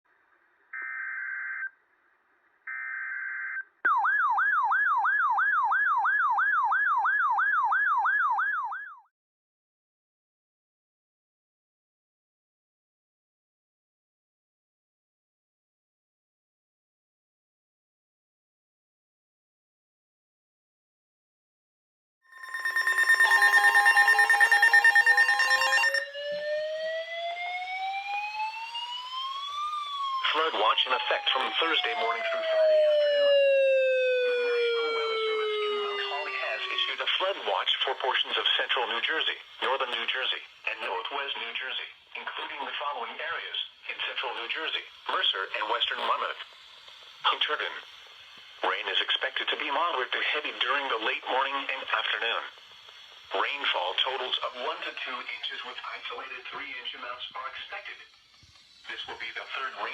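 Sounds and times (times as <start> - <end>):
emergency alert data tones: 22.3 - 27.1, 30.2 - 33.3
slowly rising tone: 22.3 - 29.0
siren-like alert tone: 22.3 - 37.0.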